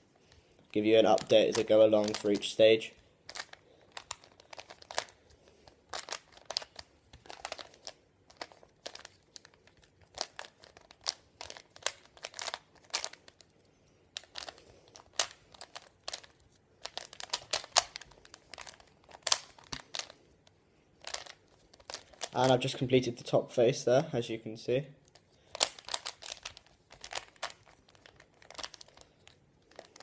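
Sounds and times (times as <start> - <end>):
plastic puzzle cube clicking: 1.0 - 2.5, 3.3 - 13.4, 14.1 - 20.2, 21.0 - 22.6, 25.4 - 30.0.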